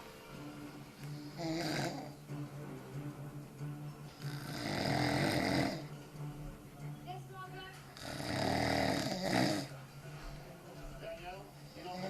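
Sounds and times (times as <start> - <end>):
man snoring heavily: 1.0 - 2.2, 4.1 - 6.0, 8.0 - 9.7, 11.8 - 12.0.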